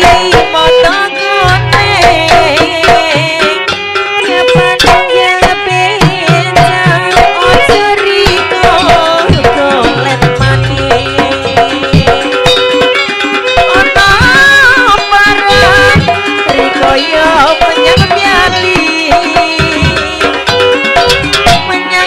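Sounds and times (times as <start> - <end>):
fast hand-drum strokes: 0.0 - 22.0
ornamented melody line: 0.0 - 22.0
deep drum thuds: 1.4 - 3.8, 8.3 - 12.8.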